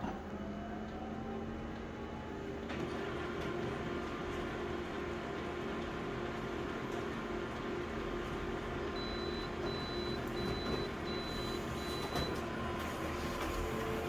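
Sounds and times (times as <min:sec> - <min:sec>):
photocopier humming: 0:02.6 - 0:14.0.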